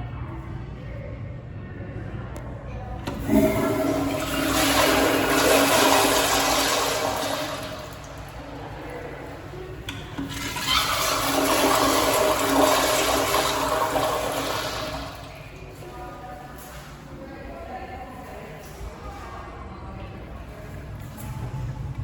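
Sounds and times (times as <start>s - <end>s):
toilet flushing: 3.0s - 15.8s.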